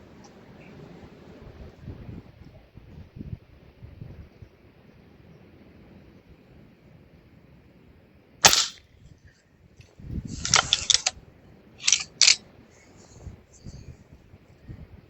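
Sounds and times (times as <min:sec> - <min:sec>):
air rifle firing crack: 0:08.4 - 0:08.8, 0:10.4 - 0:11.1, 0:11.8 - 0:12.4
metallic clatter: 0:08.4 - 0:08.8, 0:10.4 - 0:11.1, 0:11.8 - 0:12.4
rifle barrel sharp clicks: 0:08.4 - 0:08.8, 0:10.4 - 0:11.2, 0:11.8 - 0:12.4.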